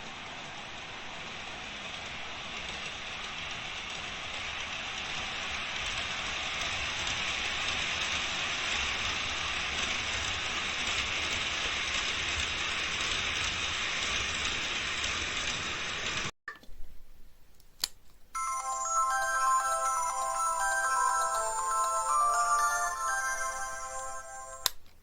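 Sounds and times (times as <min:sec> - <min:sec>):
model train rattling on track: 0:00.0 - 0:16.3.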